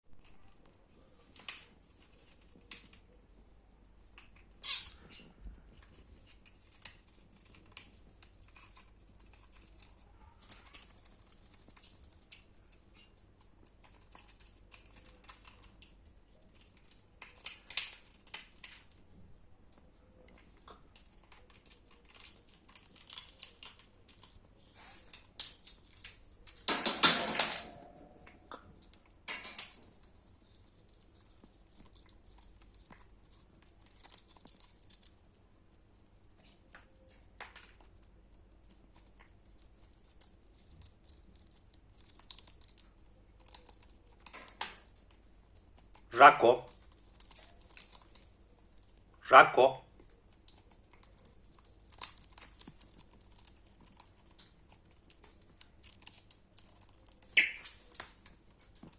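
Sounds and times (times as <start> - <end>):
parrot clicking: 50.0 - 58.3.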